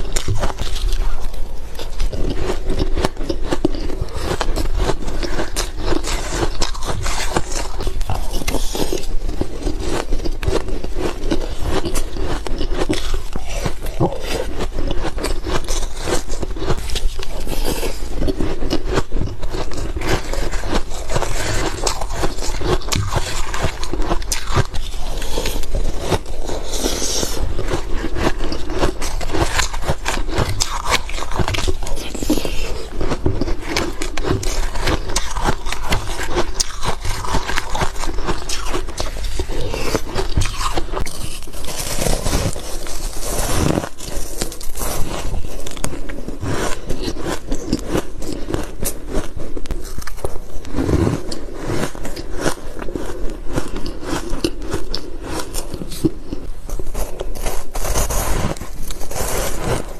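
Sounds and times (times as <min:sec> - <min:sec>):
chewing ice crunching: 0:00.0 - 0:59.9.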